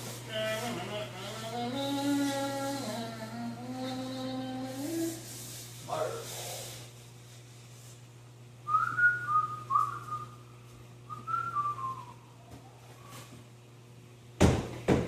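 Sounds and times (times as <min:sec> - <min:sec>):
steady low hum: 0:00.0 - 0:15.0
person whistling a tune: 0:08.7 - 0:10.4, 0:11.1 - 0:12.2.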